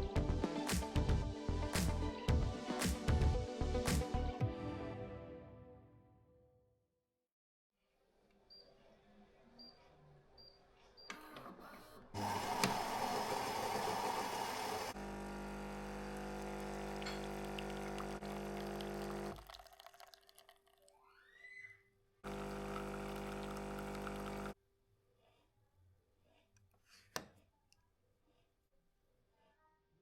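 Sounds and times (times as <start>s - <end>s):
small appliance motor whirring: 12.2s - 17.2s, 22.3s - 24.5s.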